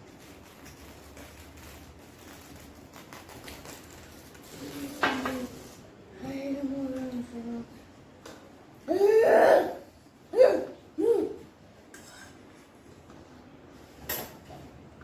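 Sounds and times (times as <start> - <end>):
utensils clinking on dishes: 11.9 - 12.6.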